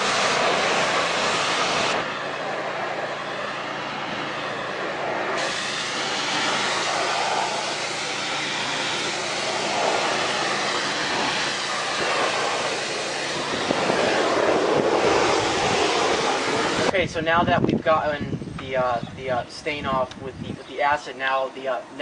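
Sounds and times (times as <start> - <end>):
pressure washer spraying water: 0.0 - 17.0.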